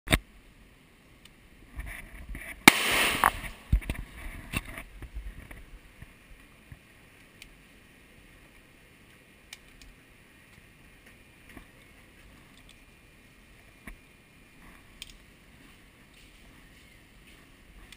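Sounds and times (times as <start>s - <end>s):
low steady background noise: 0.1s - 17.9s
pistol shots: 2.7s - 3.7s.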